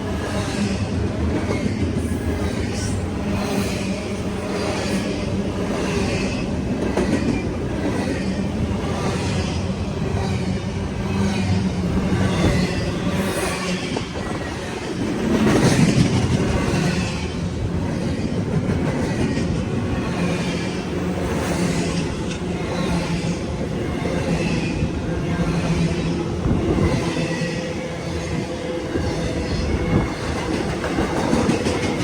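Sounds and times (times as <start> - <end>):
freight train wheels rumbling on rail: 0.0 - 32.0.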